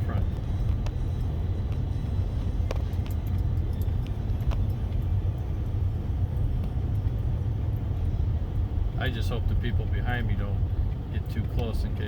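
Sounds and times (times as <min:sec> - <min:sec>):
car driving on snowy road: 0:00.0 - 0:12.0
light ticks: 0:01.7 - 0:08.7.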